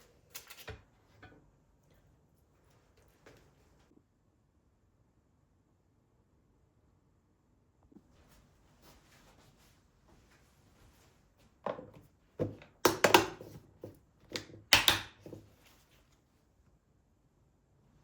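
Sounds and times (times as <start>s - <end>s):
hard objects knocking and clunking: 11.6s - 15.5s.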